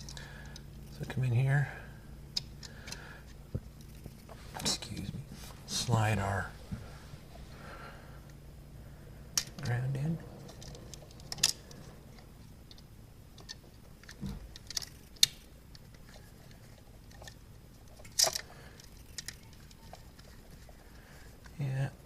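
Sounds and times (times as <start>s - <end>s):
tools clicking on wiring: 10.5s - 21.6s.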